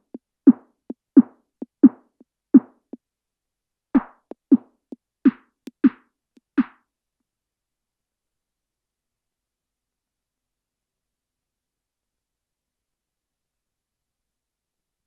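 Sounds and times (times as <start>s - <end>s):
synthesized snare drum hits: 4.0s - 4.7s, 5.3s - 6.8s.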